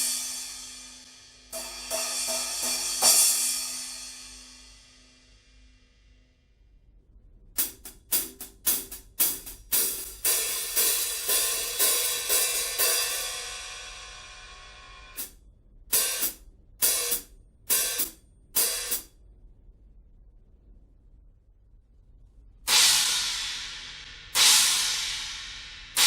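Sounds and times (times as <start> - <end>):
cymbal struck with stick: 0.0 - 5.4, 22.7 - 26.0.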